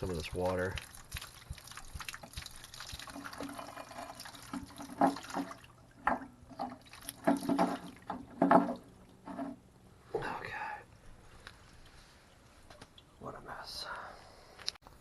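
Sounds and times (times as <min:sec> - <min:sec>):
water running and splashing: 0:00.0 - 0:09.3
water spurts: 0:00.0 - 0:09.7, 0:11.0 - 0:13.4.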